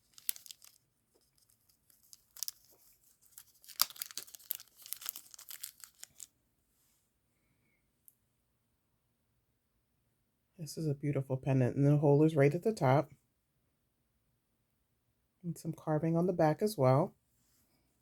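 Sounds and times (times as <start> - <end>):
packaging crinkling and tearing: 0.0 - 6.3.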